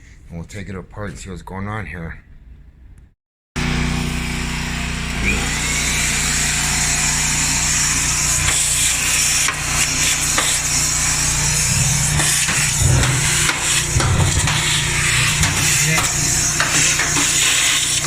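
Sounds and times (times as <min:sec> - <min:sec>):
generator engine running: 0:03.6 - 0:18.0
shop vac vacuuming: 0:03.6 - 0:18.0.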